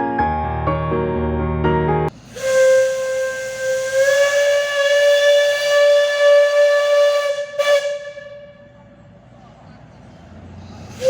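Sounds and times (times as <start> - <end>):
steam locomotive whistle: 2.2 - 8.9
hiss of steam: 10.6 - 11.0.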